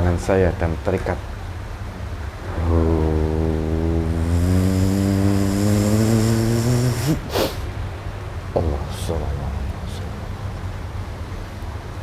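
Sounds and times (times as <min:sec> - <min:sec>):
man chanting a steady note: 0:02.4 - 0:07.3, 0:08.5 - 0:10.5
sharp breath: 0:04.0 - 0:07.7.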